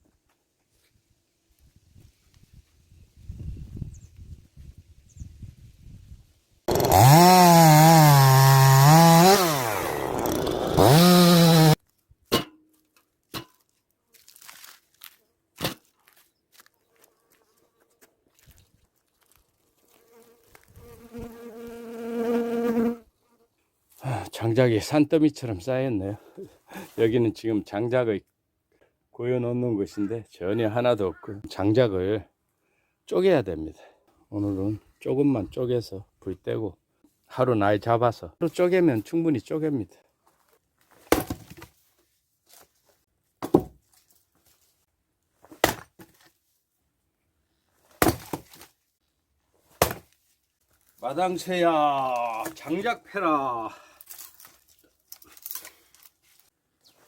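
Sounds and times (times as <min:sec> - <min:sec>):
axe chopping firewood: 0:06.7 - 0:12.7, 0:15.6 - 0:15.9, 0:41.0 - 0:41.7, 0:43.4 - 0:43.8, 0:45.4 - 0:46.3, 0:47.9 - 0:48.7, 0:49.8 - 0:50.2
flying insect buzzing: 0:19.9 - 0:23.1.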